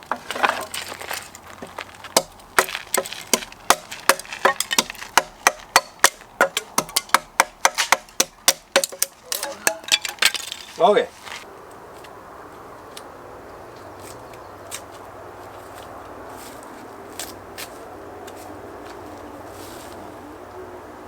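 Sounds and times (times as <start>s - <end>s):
hatchet chopping wood: 2.1s - 10.6s.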